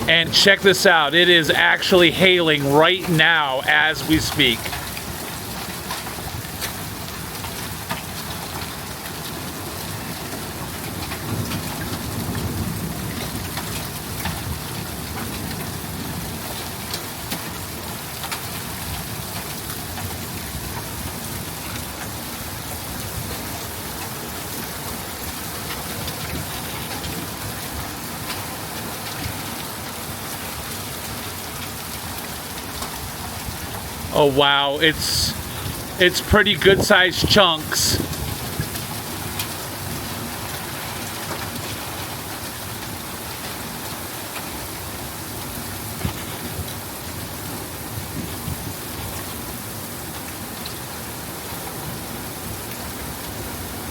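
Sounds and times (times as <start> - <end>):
heavy rain hiss: 0.0 - 4.9, 33.8 - 43.7
hailstones ticking on hard surfaces: 4.8 - 23.9.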